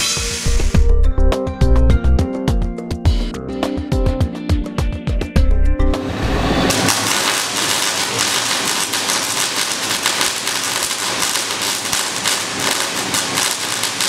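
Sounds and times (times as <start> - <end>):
welding machine crackling: 6.6 - 14.0.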